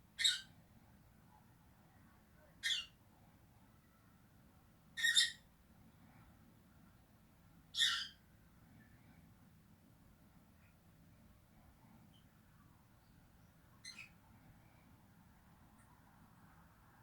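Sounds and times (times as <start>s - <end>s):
lovebird shrill calls: 5.0s - 5.4s, 7.8s - 8.2s.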